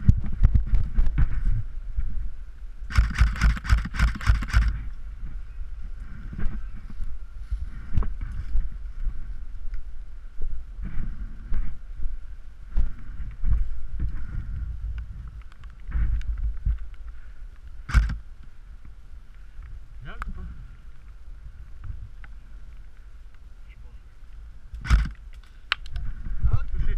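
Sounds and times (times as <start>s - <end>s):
sharp crack: 2.9s - 4.8s, 17.9s - 18.2s, 24.8s - 26.0s.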